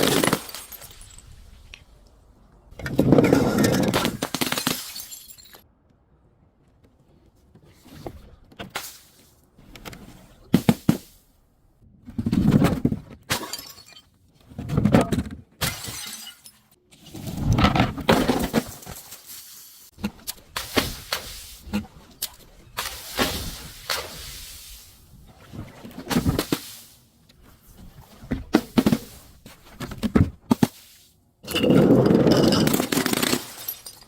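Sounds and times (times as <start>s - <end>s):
glass shattering and crunching: 0.0s - 1.6s, 3.2s - 5.6s, 13.3s - 14.2s, 15.6s - 16.8s, 31.6s - 34.0s.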